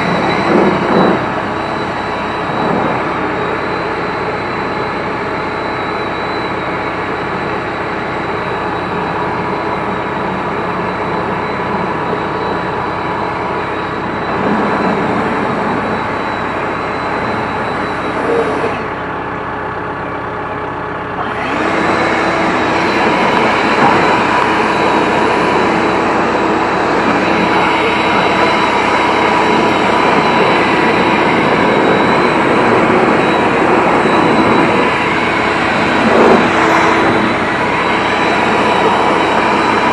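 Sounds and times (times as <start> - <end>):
engine running steadily: 0.0 - 39.9
hissing rush: 21.2 - 39.9.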